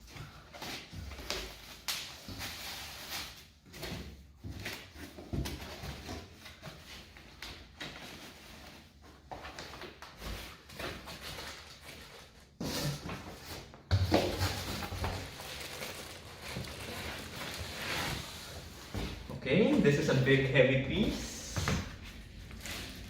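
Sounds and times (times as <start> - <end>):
packaging rustling and scraping: 4.8 - 19.9, 22.0 - 23.0.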